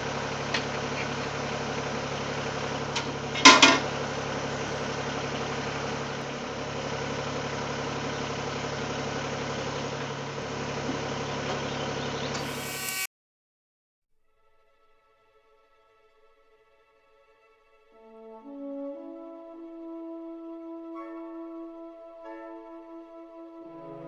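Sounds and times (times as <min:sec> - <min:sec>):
tractor diesel engine running: 0:00.0 - 0:12.4.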